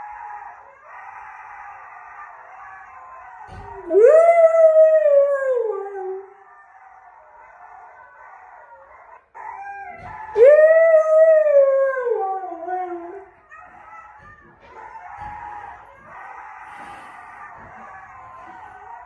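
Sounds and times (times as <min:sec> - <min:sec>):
husky howling: 0:00.0 - 0:19.0
wolf pack howling chorus: 0:00.0 - 0:19.0.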